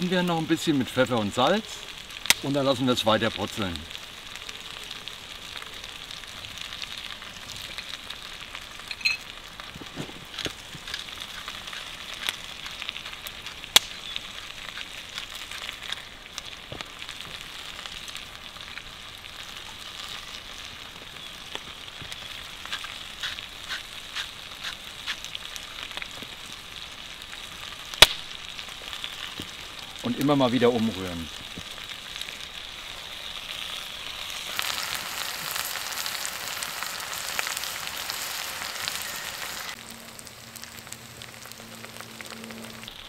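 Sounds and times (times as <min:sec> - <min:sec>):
food sizzling in a pot: 0:00.0 - 0:43.0
sharp pops: 0:09.9 - 0:16.0, 0:27.9 - 0:28.4.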